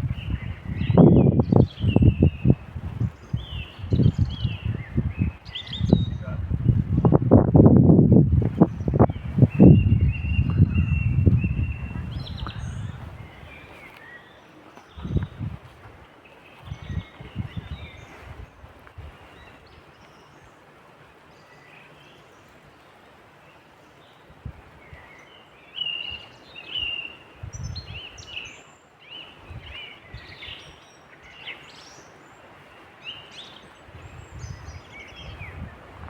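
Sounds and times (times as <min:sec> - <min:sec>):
songbirds chirping and whistling: 0:00.0 - 0:07.1, 0:08.6 - 0:15.6, 0:16.2 - 0:20.6, 0:23.5 - 0:36.0
low rumbles: 0:03.9 - 0:13.4.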